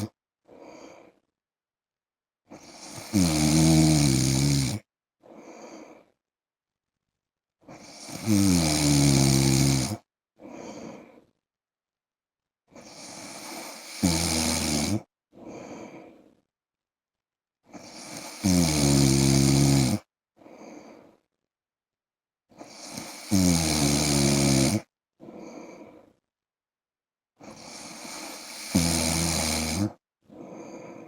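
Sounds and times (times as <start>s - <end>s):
man snoring: 2.5s - 4.9s, 7.7s - 10.0s, 12.8s - 15.1s, 17.7s - 20.1s, 22.6s - 25.7s, 27.4s - 31.0s.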